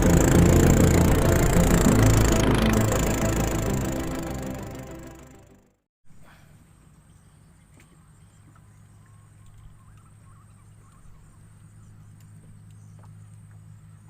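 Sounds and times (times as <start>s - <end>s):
steady low hum: 0.0s - 5.6s
thin high whine: 0.0s - 5.6s.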